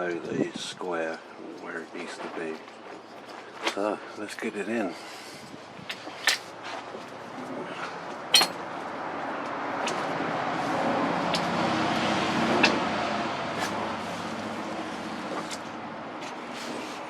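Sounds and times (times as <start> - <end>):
road vehicle passing: 4.9 - 17.0.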